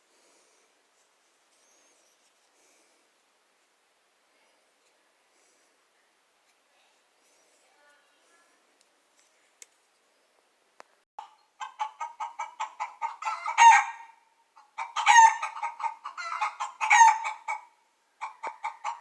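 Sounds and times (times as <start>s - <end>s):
chicken clucking: 11.2s - 13.9s, 14.6s - 19.0s.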